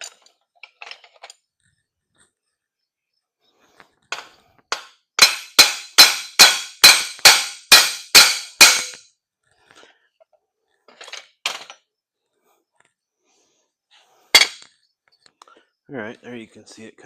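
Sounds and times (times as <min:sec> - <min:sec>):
hammer striking steel: 0:04.1 - 0:09.0.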